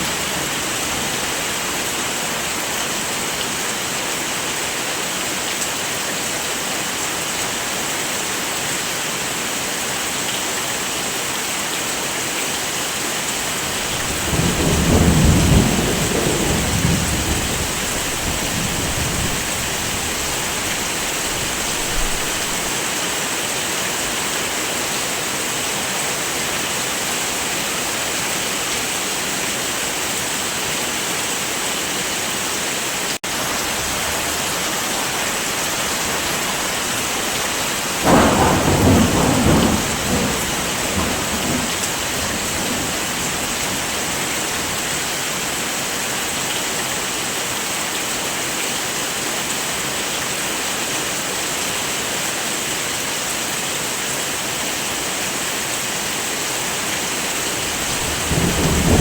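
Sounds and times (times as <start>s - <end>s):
heavy rain: 0.0s - 59.0s
thunder rumbling: 13.6s - 22.7s, 38.0s - 44.7s, 57.5s - 59.0s.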